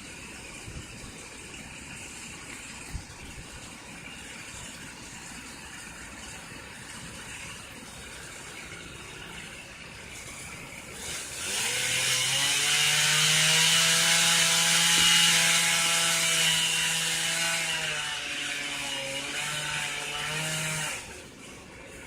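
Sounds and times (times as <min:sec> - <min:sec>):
chainsaw cutting wood: 0:11.0 - 0:21.2.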